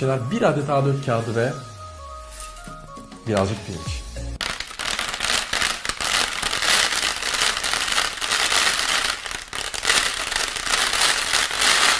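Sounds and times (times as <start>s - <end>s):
rice grains falling onto paper: 4.4s - 11.9s.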